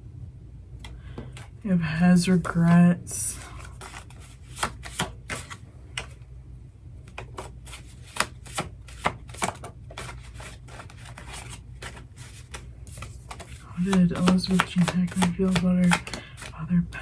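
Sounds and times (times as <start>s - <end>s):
low steady hum: 0.0s - 17.0s
cards being shuffled: 2.4s - 6.2s, 7.0s - 16.6s.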